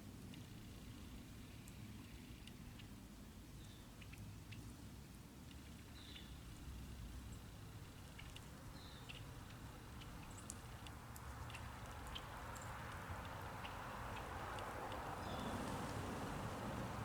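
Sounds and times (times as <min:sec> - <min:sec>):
small birds chirping: 0:07.3 - 0:10.7, 0:11.4 - 0:16.2.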